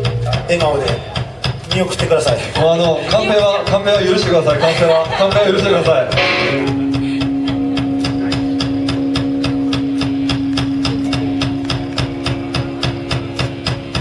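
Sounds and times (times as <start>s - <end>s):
ticking beat: 0.0s - 14.0s
held note: 6.0s - 13.1s
low pulse: 6.1s - 14.0s.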